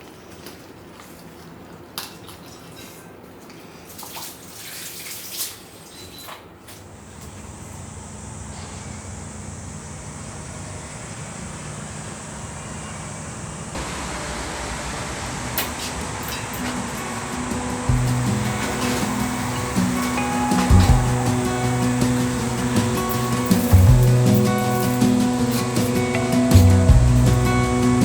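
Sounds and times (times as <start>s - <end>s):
utensils and dishes clicking: 15.6s - 28.0s.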